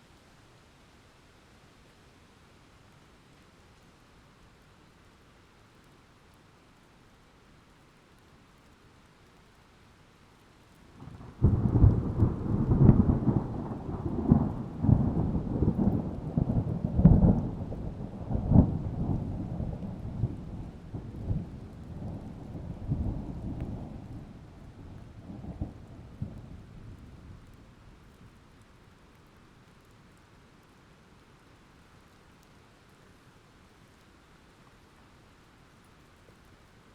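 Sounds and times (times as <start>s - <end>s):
faint rain hiss: 0.0s - 36.9s
thunder rumbling and cracking: 11.0s - 27.7s.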